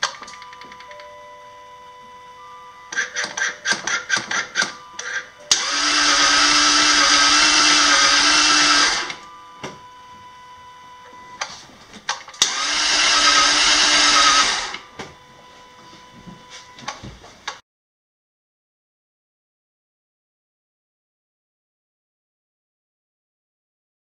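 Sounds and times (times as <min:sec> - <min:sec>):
engine cranking on starter motor: 0:03.0 - 0:09.2, 0:12.1 - 0:14.9.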